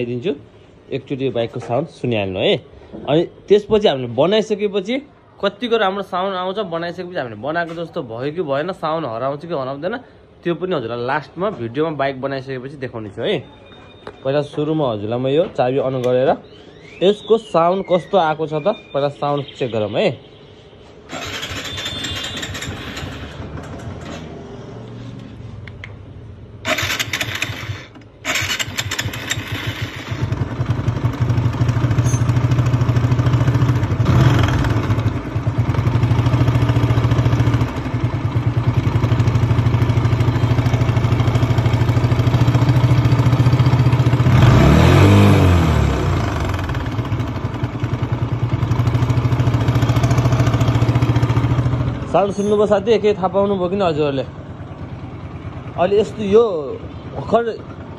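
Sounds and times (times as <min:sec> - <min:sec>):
motorcycle engine starting and revving: 0:21.1 - 0:57.9.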